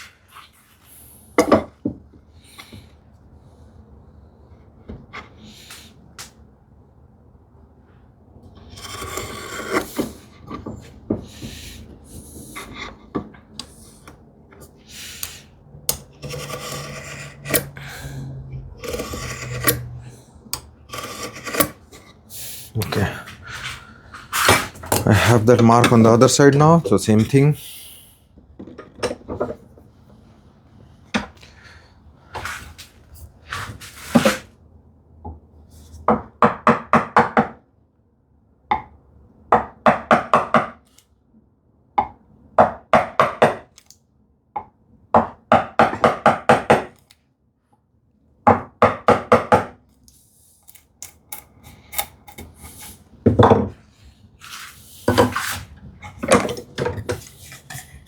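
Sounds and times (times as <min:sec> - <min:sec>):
hand tool working wood: 0:08.7 - 0:22.2, 0:22.8 - 0:27.6, 0:54.4 - 0:58.0.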